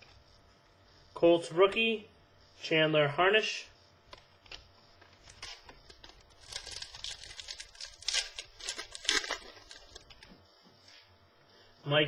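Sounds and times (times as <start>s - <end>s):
trading cards rustling: 4.1s - 10.3s.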